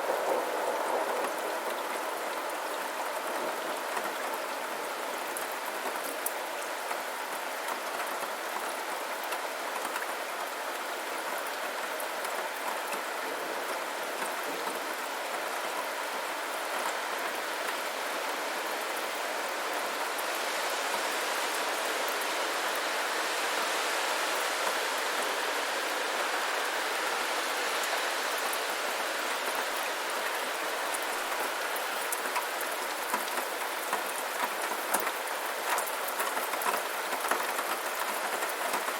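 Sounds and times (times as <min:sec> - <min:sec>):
steady rainfall: 0:00.0 - 0:38.9
raindrop ticks: 0:32.0 - 0:38.9.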